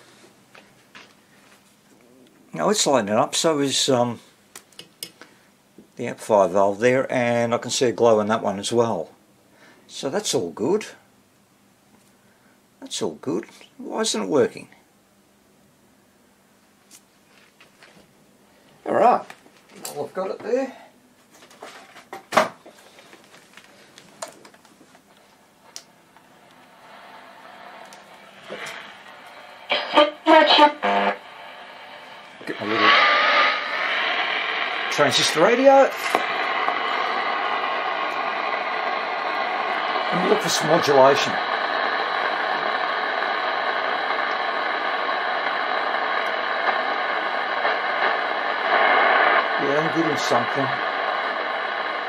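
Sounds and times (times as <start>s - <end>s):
faint hiss: 0.0s - 11.3s, 25.0s - 52.0s
faint radio tuning clicks: 21.4s - 31.2s, 32.1s - 52.0s.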